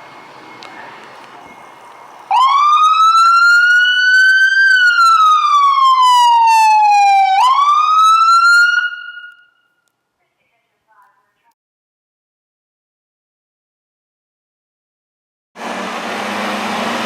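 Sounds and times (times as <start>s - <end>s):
ambulance siren wailing: 0.0s - 9.5s.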